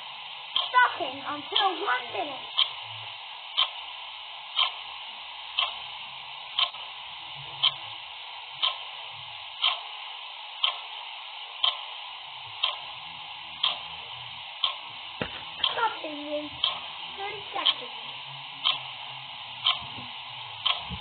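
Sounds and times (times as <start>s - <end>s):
constant hiss: 0.0s - 21.0s
clock ticking: 0.5s - 2.8s, 3.6s - 3.9s, 4.6s - 4.8s, 5.6s - 5.9s, 6.6s - 6.9s, 7.6s - 7.8s, 8.6s - 8.9s, 9.6s - 9.9s, 10.6s - 11.0s, 11.6s - 13.0s, 13.6s - 13.9s, 14.6s - 19.0s, 19.6s - 21.0s.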